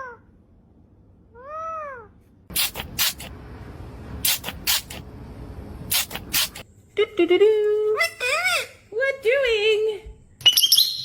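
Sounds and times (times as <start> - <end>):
sharp noisy bursts: 2.5 - 3.3, 4.2 - 5.0, 5.9 - 6.6.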